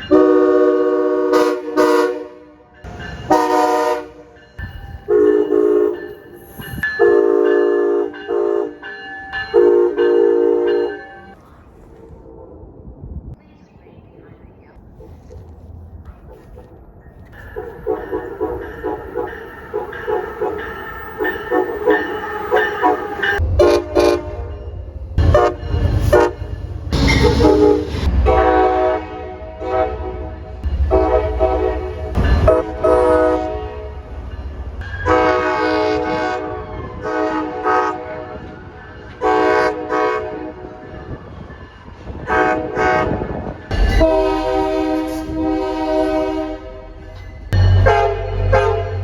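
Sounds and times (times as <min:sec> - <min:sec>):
locomotive air horn blasts: 0:00.0 - 0:02.7, 0:03.3 - 0:04.3, 0:05.1 - 0:06.0, 0:07.0 - 0:08.8, 0:09.6 - 0:10.9, 0:23.5 - 0:24.5, 0:25.2 - 0:34.0, 0:35.0 - 0:38.5, 0:39.2 - 0:40.7, 0:42.3 - 0:49.0
passing train rumble: 0:00.0 - 0:49.0.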